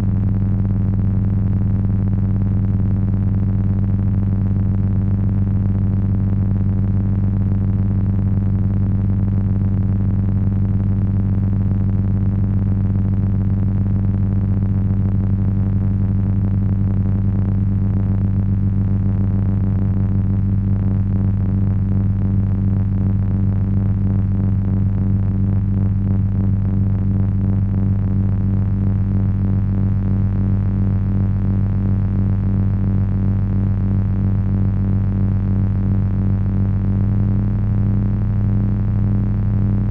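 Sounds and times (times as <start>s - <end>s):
deep electronic hum: 0.0s - 39.9s
pulsing wavering buzz: 36.0s - 39.9s.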